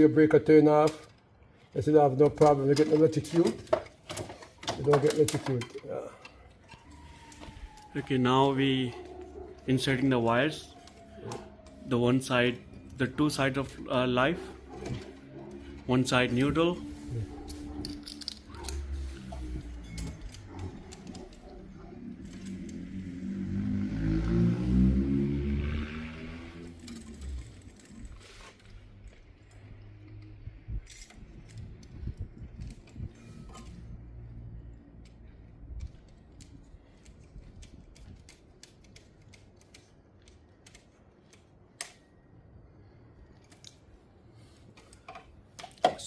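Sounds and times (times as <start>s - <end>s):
electrical cable clicks and rustles: 0.2s - 23.1s, 26.5s - 42.3s, 43.2s - 46.0s
small clicks of wires and tools: 34.9s - 42.2s, 43.3s - 44.0s.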